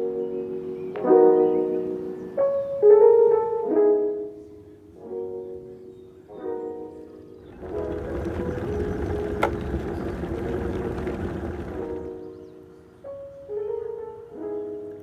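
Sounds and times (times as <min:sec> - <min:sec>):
slow instrumental music: 0:00.0 - 0:09.4.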